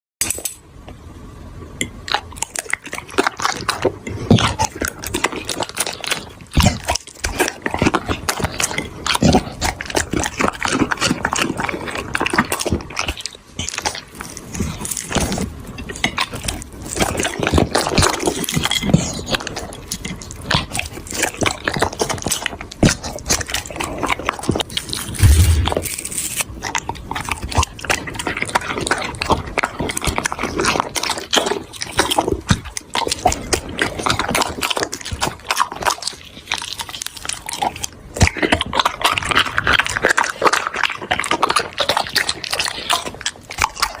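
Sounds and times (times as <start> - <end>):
dog eating noisily: 1.8 - 44.0
low bump: 25.2 - 25.9.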